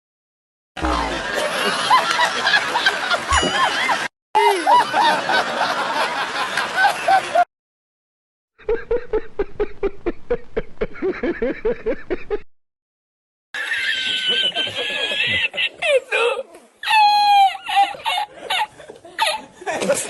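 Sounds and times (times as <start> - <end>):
high wavering laughter: 0.8 - 7.4, 8.6 - 12.4, 13.6 - 19.8
rapid chuckling laugh: 8.6 - 12.4, 13.6 - 16.4, 17.0 - 20.0.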